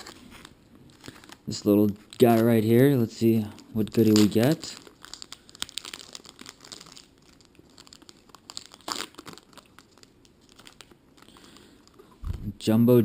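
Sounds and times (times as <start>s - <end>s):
card pack wrapper crinkling: 0.0s - 12.4s.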